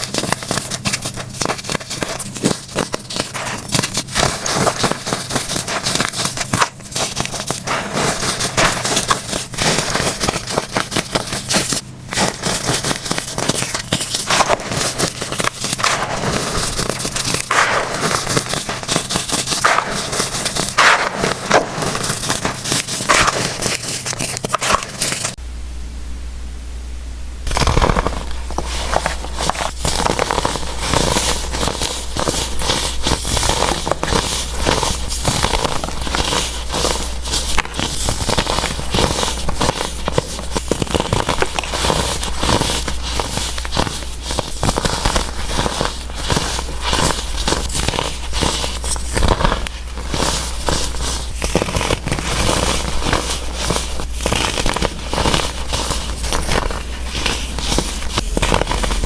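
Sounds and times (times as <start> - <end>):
baking soda blocks crunching: 0.0 - 25.4, 27.4 - 59.0
low hum: 3.3 - 36.0.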